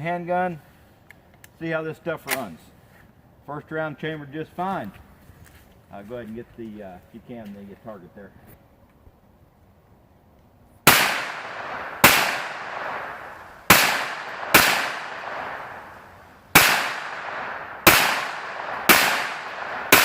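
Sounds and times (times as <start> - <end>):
gunshots with ringing echo: 10.9 - 20.0.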